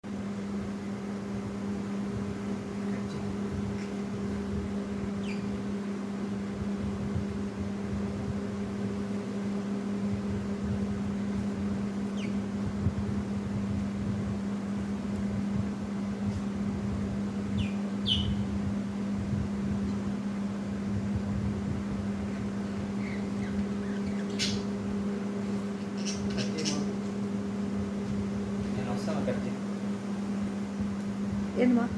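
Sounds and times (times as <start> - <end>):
low mechanical hum: 0.0 - 31.9
lovebirds chirping: 5.1 - 5.7, 12.0 - 12.6, 17.4 - 18.6, 22.3 - 25.0, 25.7 - 27.1.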